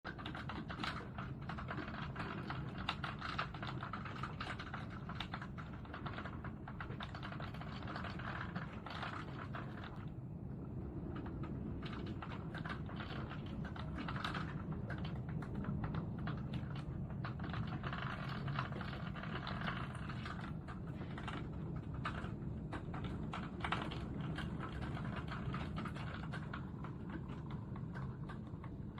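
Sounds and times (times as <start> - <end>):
heavy rain on hard surfaces: 10.8 - 28.9.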